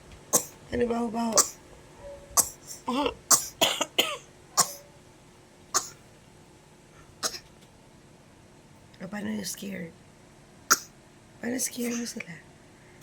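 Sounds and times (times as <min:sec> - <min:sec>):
toddler pretend coughing: 0:02.4 - 0:04.8, 0:10.7 - 0:11.0.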